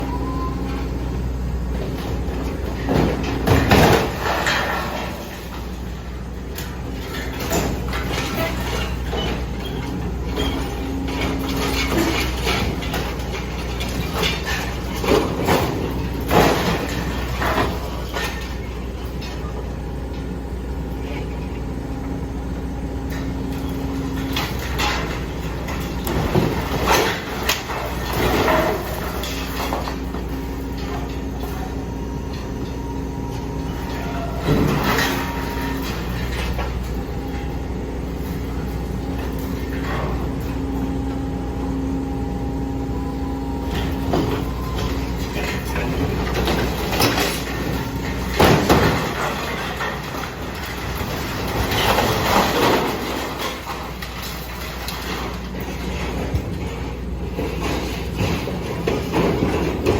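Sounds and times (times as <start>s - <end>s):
excavator diesel engine running: 0.0s - 59.9s
metal clanking and scraping: 23.1s - 32.8s.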